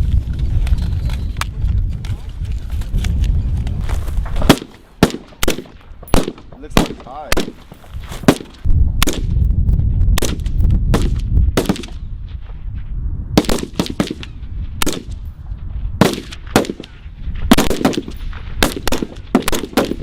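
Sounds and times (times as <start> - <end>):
rifle shots: 4.4 - 9.3, 10.2 - 12.0, 13.4 - 15.2, 16.0 - 20.0.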